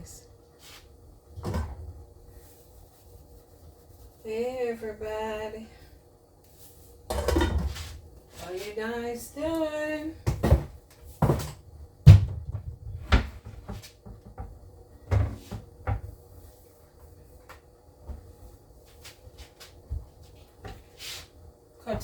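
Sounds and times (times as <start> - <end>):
knocks and clunks in kitchen: 1.3 - 2.1, 7.1 - 8.0, 9.4 - 16.3, 19.7 - 21.0.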